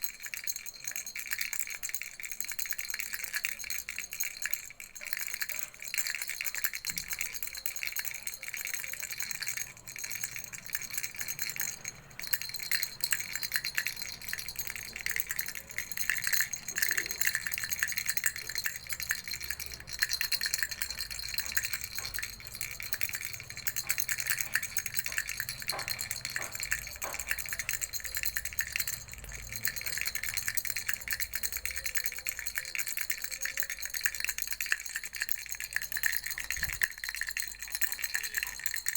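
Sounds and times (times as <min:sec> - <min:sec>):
baby rattle shaken: 0:00.0 - 0:38.9.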